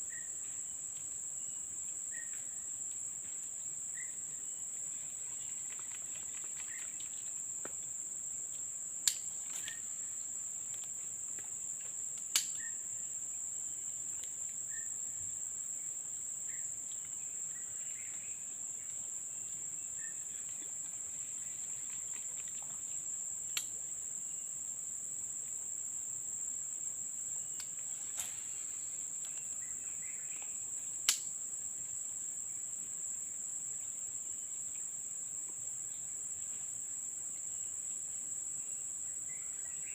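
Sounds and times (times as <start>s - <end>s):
short insect chirps: 0.0s - 2.9s, 3.9s - 8.0s, 8.9s - 15.2s, 16.4s - 24.8s, 26.5s - 31.5s
insects droning: 0.0s - 39.9s.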